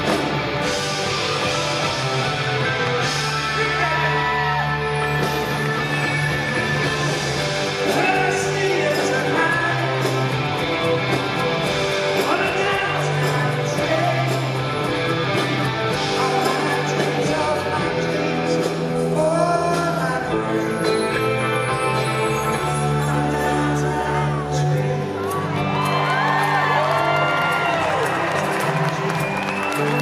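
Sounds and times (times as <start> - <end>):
held bass notes: 0.0 - 25.8
electric guitar: 0.0 - 30.0
live rock band playing: 0.0 - 30.0
person singing: 5.8 - 10.3, 12.2 - 25.9.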